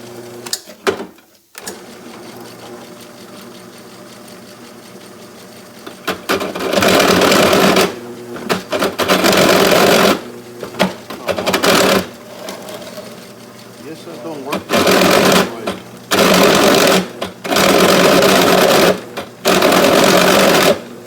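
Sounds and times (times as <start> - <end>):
machine motor running: 1.6 - 21.0.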